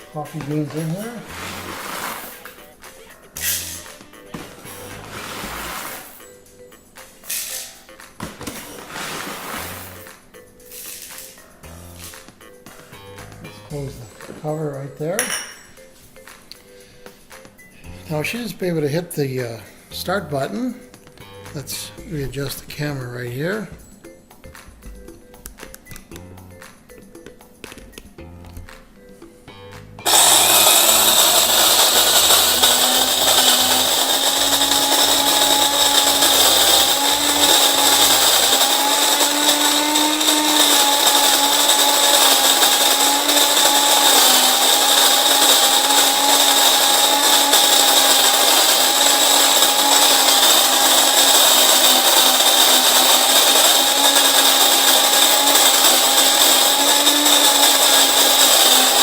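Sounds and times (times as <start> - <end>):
coffee grinder grinding beans: 0.0 - 2.7, 3.4 - 6.3, 8.5 - 11.3, 30.0 - 59.0.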